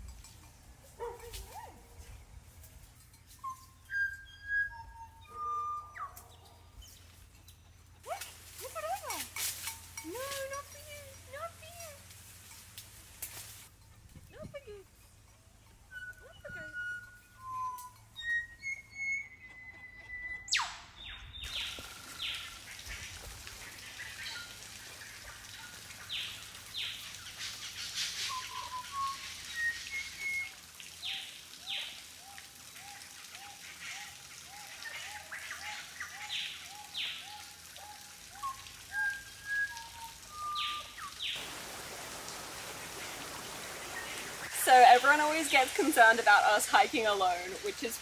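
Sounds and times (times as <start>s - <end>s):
constant hiss: 0.0s - 4.3s, 5.9s - 19.0s, 20.8s - 48.0s
whistled bird notes: 3.3s - 7.0s, 15.9s - 22.6s, 27.6s - 31.9s, 33.9s - 41.4s.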